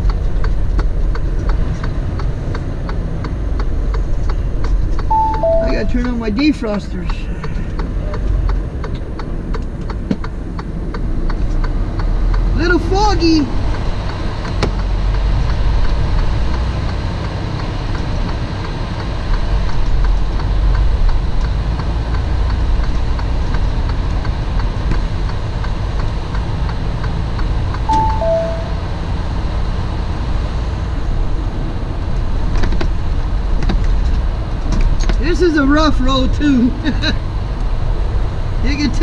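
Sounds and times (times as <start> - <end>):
truck engine and road rumble: 0.0 - 39.0
two-note electronic chime: 5.1 - 6.1, 27.9 - 28.9.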